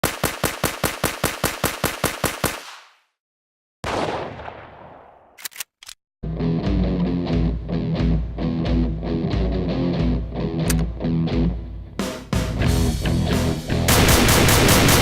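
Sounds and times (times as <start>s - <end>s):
machine gun firing: 0.0s - 3.0s, 13.9s - 15.0s
quick clicks: 5.4s - 6.0s
guitar music: 6.2s - 13.9s.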